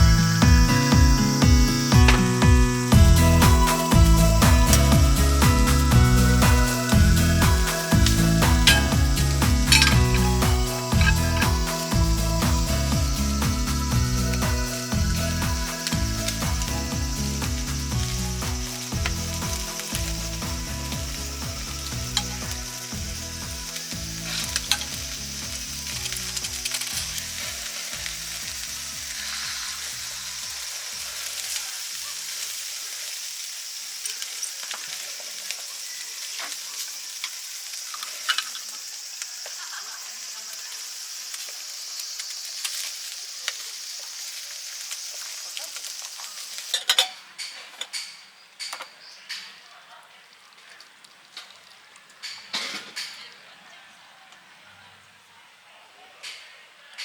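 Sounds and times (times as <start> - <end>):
background music: 0.0 - 30.2
meat sizzling in a pan: 0.0 - 49.3.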